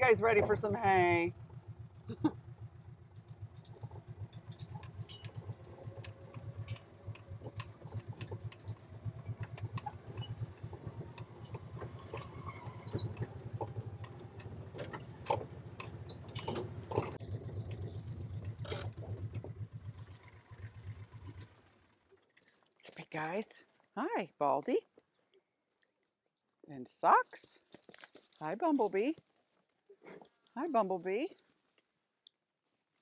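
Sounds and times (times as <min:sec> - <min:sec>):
engine running at low speed: 0:00.0 - 0:22.2
clicks and rattles: 0:00.0 - 0:22.6.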